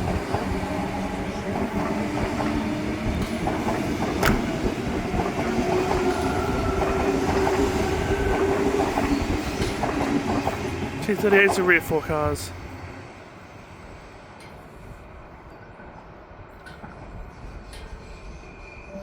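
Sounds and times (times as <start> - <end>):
train motor hum: 0.0 - 8.3
train wheels rumbling on rails: 0.0 - 19.0.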